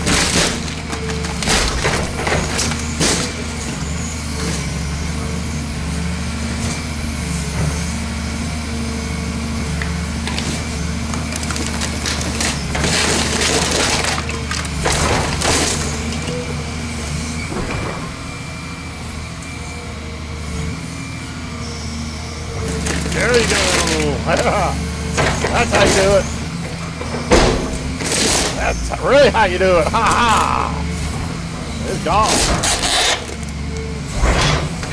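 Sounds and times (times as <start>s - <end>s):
metal and plastic crunching: 0.0s - 3.4s, 10.3s - 16.4s, 22.7s - 28.8s, 32.0s - 34.9s
excavator diesel engine running: 0.0s - 34.9s.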